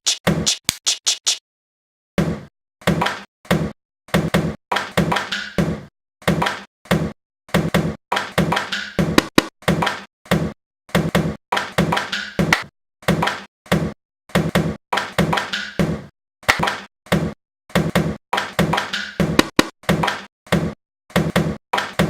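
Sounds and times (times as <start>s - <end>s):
knocks on household objects: 7.6s - 22.0s.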